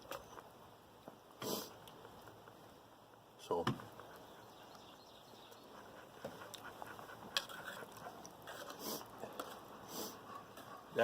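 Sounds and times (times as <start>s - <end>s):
faint chewing: 1.4s - 2.7s, 3.8s - 11.0s.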